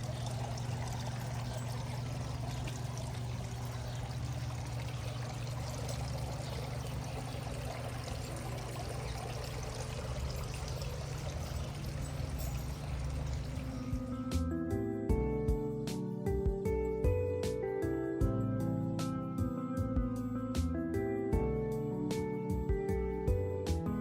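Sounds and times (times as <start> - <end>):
water running: 0.0 - 14.4
low hum: 0.0 - 14.5.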